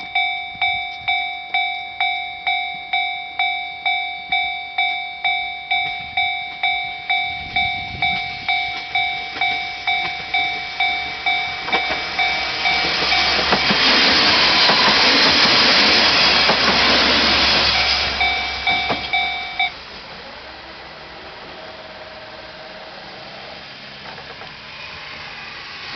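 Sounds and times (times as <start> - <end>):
level crossing electronic bell: 0.0 - 14.7, 17.3 - 19.8
diesel train engine hum: 0.0 - 25.9
train wheels on rails: 0.0 - 25.9.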